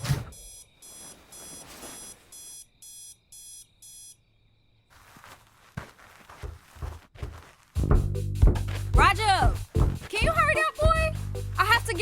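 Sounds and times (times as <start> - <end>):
alarm clock beeping: 0.3 - 4.2
soft thumps: 5.8 - 10.1.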